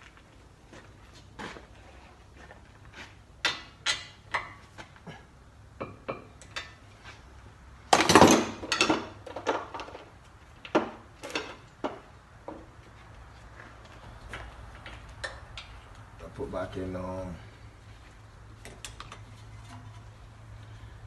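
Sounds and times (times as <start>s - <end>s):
metal tools clinking and knocking: 8.0s - 10.0s.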